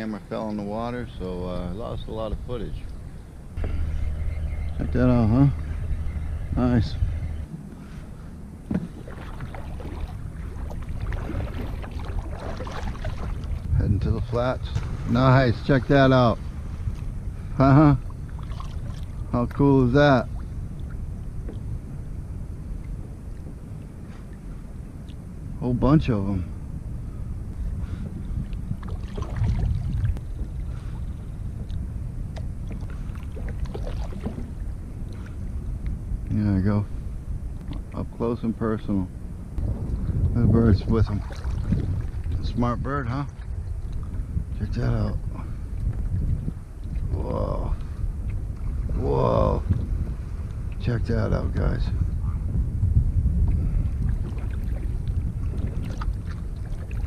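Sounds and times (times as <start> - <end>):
water lapping at hull: 0.0 - 26.4, 27.0 - 36.0, 36.9 - 38.2, 39.7 - 57.0
wind rumble on microphone: 0.0 - 57.0
paddle splashes and drips: 8.7 - 13.7, 18.3 - 19.2, 28.8 - 31.0, 32.3 - 35.4, 41.1 - 42.4, 43.3 - 44.2, 53.8 - 57.0
water splashing and dripping: 8.9 - 13.7.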